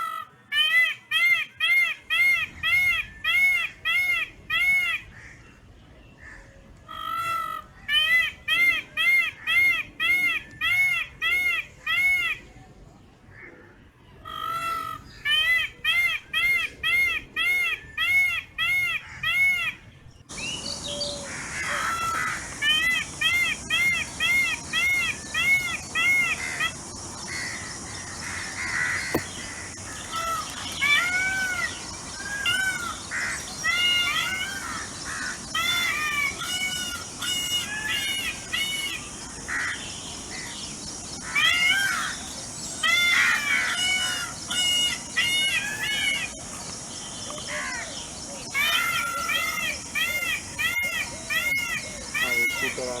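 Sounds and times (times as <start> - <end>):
peacocks calling: 0.0 - 53.0
steady high hiss: 19.4 - 53.0.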